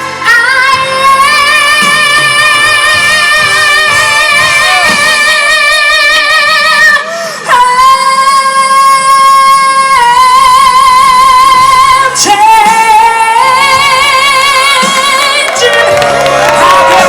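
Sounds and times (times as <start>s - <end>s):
crowd cheering and whooping: 3.9s - 5.2s, 14.8s - 17.0s.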